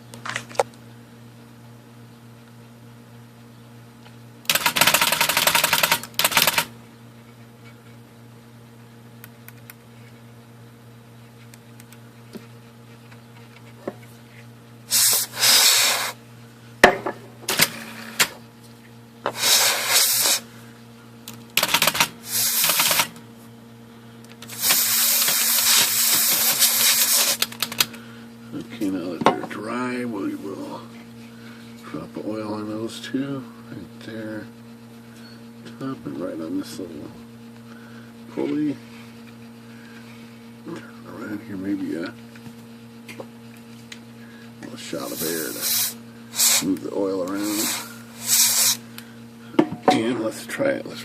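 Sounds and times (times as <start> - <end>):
hissing spray blasts: 14.9 - 16.2, 19.3 - 20.4, 24.5 - 27.4, 45.1 - 46.7, 47.4 - 48.8.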